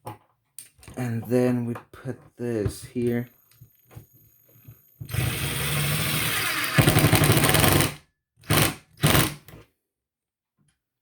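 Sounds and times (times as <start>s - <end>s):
power screwdriver hammering rattle: 5.0s - 9.5s.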